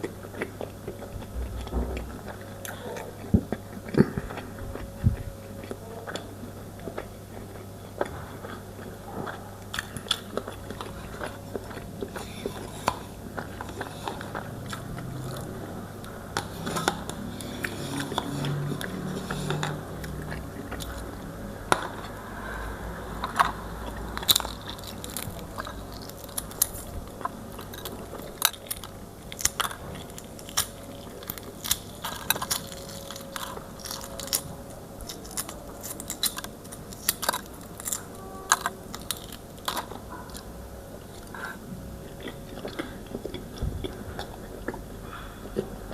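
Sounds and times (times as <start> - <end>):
chewing and biting: 0.0 - 45.9
low hum: 0.0 - 45.9.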